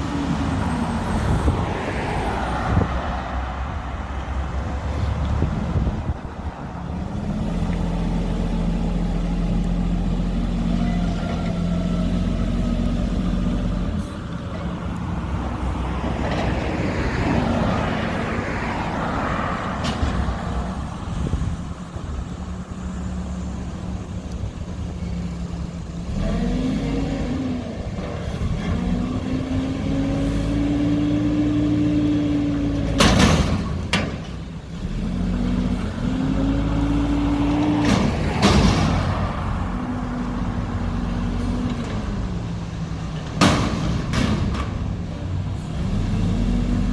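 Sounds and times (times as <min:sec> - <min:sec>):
garbage truck diesel engine: 0:00.0 - 0:46.9
engine revving: 0:26.0 - 0:33.4.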